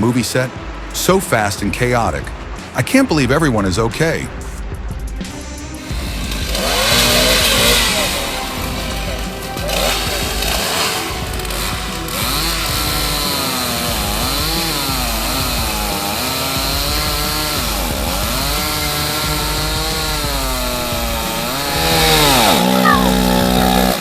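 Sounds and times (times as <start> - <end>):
loud steady low tone: 5.4 - 24.0
chainsaw engine revving: 5.8 - 24.0.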